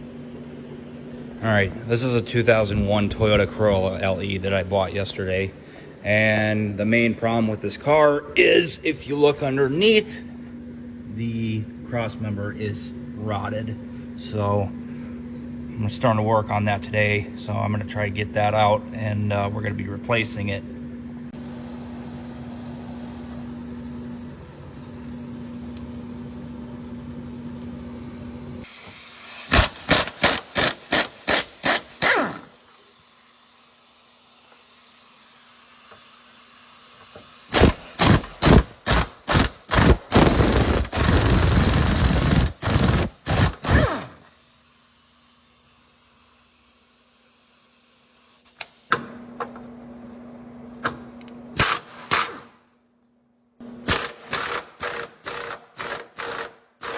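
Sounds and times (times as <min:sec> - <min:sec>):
steady low hum: 0:00.0 - 0:28.7, 0:37.5 - 0:44.3
impact wrench hammering: 0:29.5 - 0:32.6, 0:37.5 - 0:44.3, 0:53.8 - 0:56.9.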